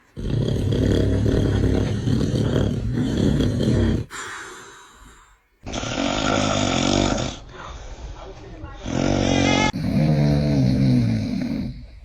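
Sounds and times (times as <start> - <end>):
man snoring loudly: 0.2 - 4.2, 5.6 - 7.4, 8.8 - 11.8.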